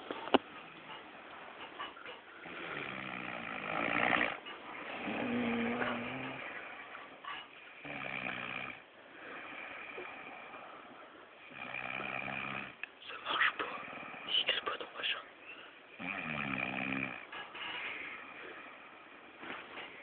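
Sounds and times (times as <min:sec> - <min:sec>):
man snoring: 0:02.4 - 0:06.6, 0:07.8 - 0:08.8, 0:11.4 - 0:12.8, 0:16.0 - 0:17.3.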